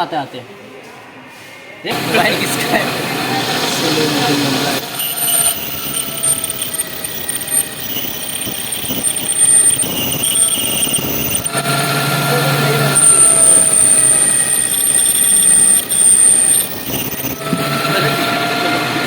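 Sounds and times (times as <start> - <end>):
metal lathe cutting steel: 1.9 - 19.0.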